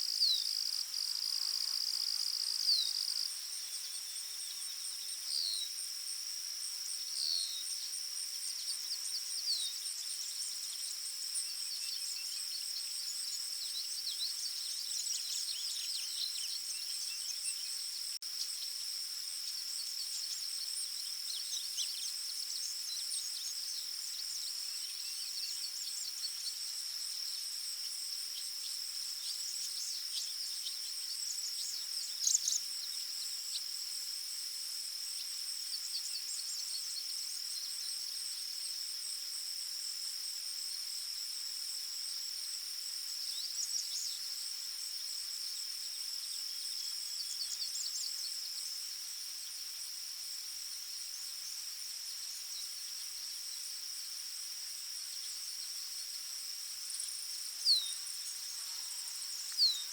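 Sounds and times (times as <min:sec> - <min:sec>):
high insect trill: 0:00.0 - 0:59.9
small bird chirps: 0:28.4 - 0:33.7, 0:56.9 - 0:59.9.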